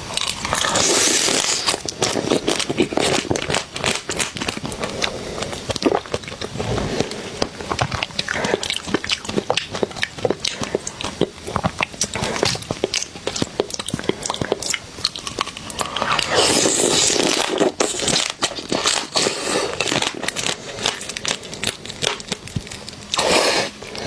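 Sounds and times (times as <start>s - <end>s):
crab shell crunching while eaten: 0.0s - 24.0s.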